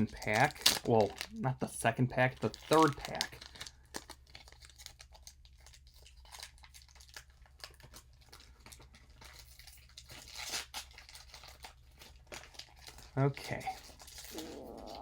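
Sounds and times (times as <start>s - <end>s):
foil wrapper crinkling and tearing: 0.0s - 15.0s.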